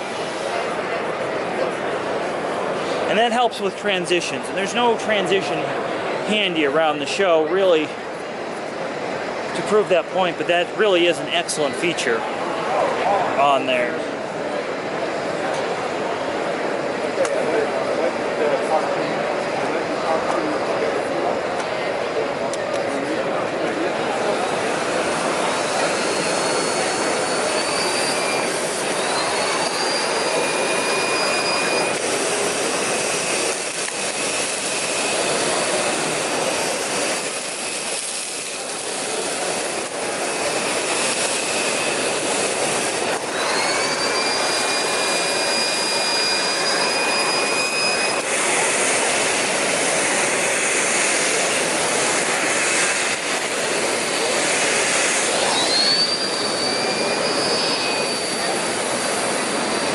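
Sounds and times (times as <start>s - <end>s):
vacuum high whine: 0.0s - 59.9s
vacuum cleaner suction rush: 24.4s - 59.9s.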